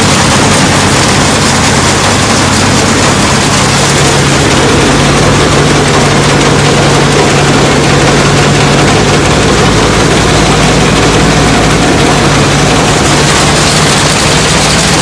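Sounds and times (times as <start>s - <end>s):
heavy machine engine humming: 0.0s - 15.0s.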